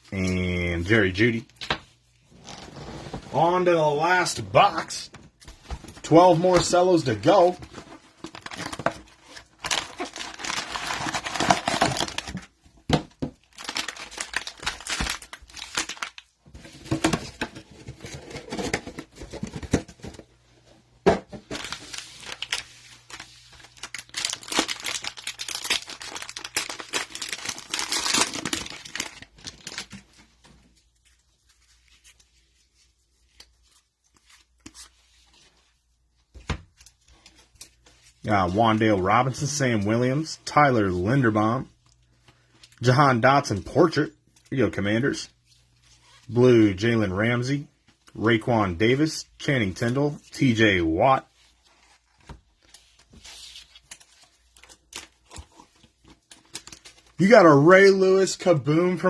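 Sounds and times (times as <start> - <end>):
plastic wrappers tearing and crinkling: 7.0 - 12.6, 13.4 - 16.3, 21.5 - 30.3, 51.6 - 57.4.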